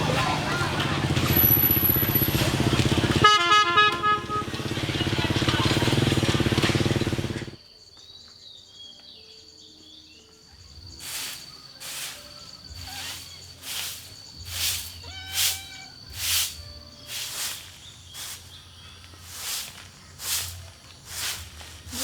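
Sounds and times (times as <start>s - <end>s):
motorbike engine running: 0.0s - 7.6s, 12.8s - 22.0s
horn beeps: 1.1s - 7.6s
broom sweeping: 11.0s - 22.0s.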